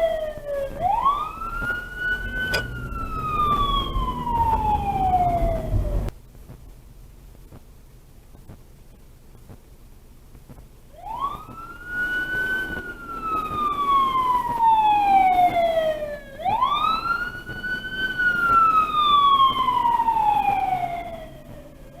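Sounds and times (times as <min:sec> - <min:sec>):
fire engine siren wailing: 0:00.0 - 0:06.1, 0:11.0 - 0:22.0.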